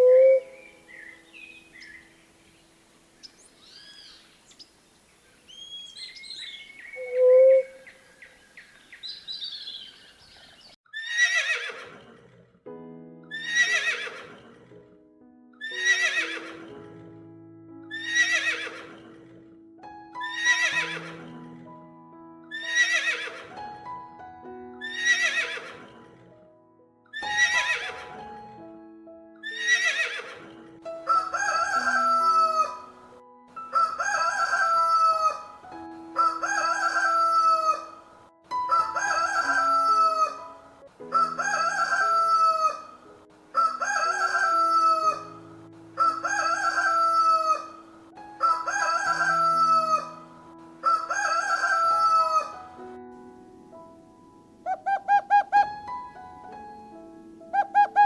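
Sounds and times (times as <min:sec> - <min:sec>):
rooster crowing: 0:06.4 - 0:07.9, 0:31.1 - 0:32.9, 0:33.7 - 0:35.5, 0:36.2 - 0:38.0, 0:38.7 - 0:40.4, 0:41.1 - 0:43.0, 0:43.6 - 0:45.4, 0:46.0 - 0:47.8, 0:48.4 - 0:50.2, 0:50.8 - 0:52.6
horse whinnying: 0:10.9 - 0:12.3, 0:13.3 - 0:14.6, 0:15.6 - 0:16.7, 0:17.9 - 0:19.2, 0:20.3 - 0:21.4, 0:22.5 - 0:23.5, 0:24.8 - 0:26.0, 0:27.2 - 0:28.0, 0:29.4 - 0:30.5
simple melody of held notes: 0:52.5 - 0:58.0.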